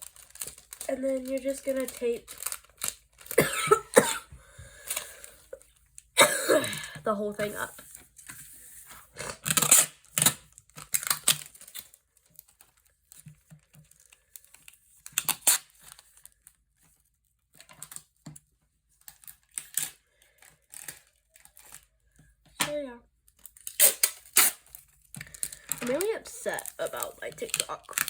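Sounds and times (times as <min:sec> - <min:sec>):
paper crinkling: 0:00.0 - 0:03.9, 0:07.1 - 0:22.4, 0:23.1 - 0:28.0
sticky tape ripping: 0:09.2 - 0:11.8, 0:15.2 - 0:15.9, 0:23.5 - 0:24.9.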